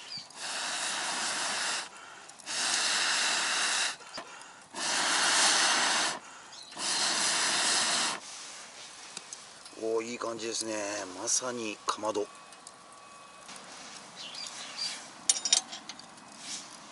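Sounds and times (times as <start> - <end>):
breath blowing into fire: 0.0 - 9.6, 16.4 - 16.9.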